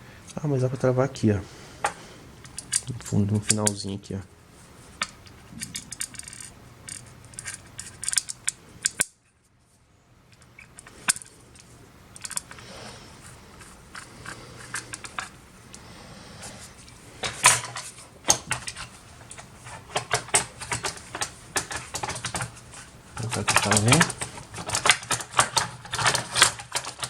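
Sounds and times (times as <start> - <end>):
metal parts clicking and rattling: 2.4 - 3.8, 4.9 - 9.2, 10.3 - 12.7, 13.6 - 15.4, 16.8 - 27.0.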